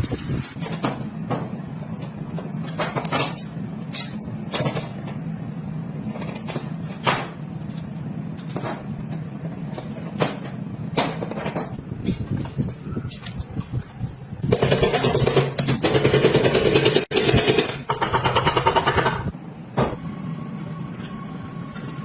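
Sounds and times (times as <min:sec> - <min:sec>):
sharp knocks and clicks: 0:14.5 - 0:20.0.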